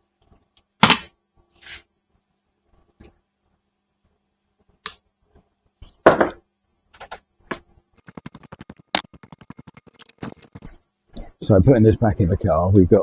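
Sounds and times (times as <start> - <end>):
rapid ratchet-like ticks: 8.0 - 10.8.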